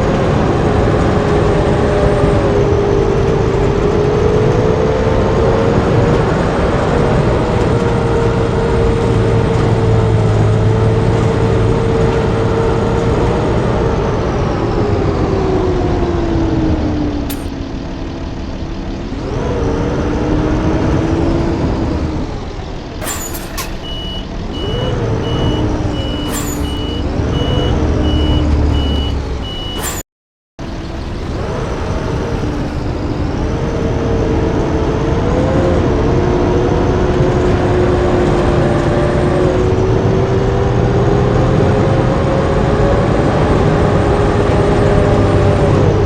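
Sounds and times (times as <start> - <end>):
bus diesel engine running: 0.0 - 30.0, 30.6 - 46.0
short sharp hisses: 17.3 - 17.5, 23.0 - 24.1, 26.0 - 27.0, 29.8 - 30.0
high repeating beep: 23.0 - 30.0.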